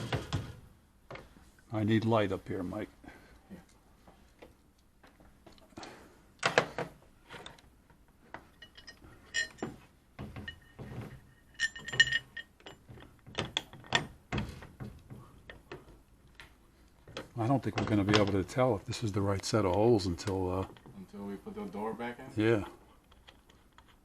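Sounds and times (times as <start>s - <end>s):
metal tools clicking and clinking: 8.3s - 14.1s.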